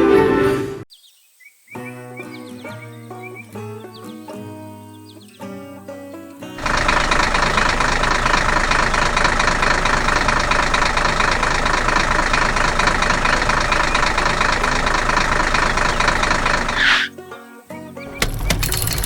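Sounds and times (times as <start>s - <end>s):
combine harvester engine running: 6.6s - 17.1s, 18.1s - 19.0s
fast pulsing rattle: 6.6s - 17.1s, 18.1s - 19.0s.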